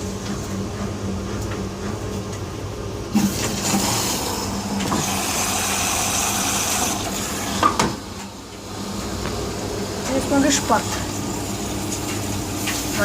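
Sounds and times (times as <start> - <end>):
washing machine humming: 0.0 - 13.0
water rushing through machine: 3.0 - 13.0.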